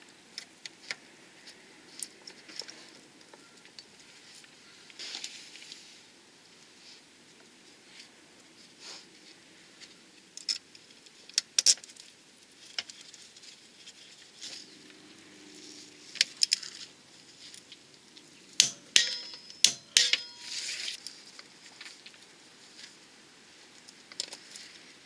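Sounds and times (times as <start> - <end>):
ringing metal knocks: 18.6 - 20.6
metal tools clinking: 18.6 - 21.0.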